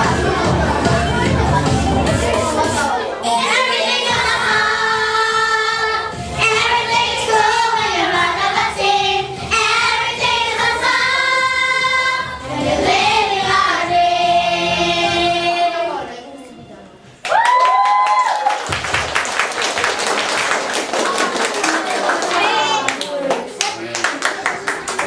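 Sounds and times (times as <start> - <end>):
children singing together: 0.0 - 16.0.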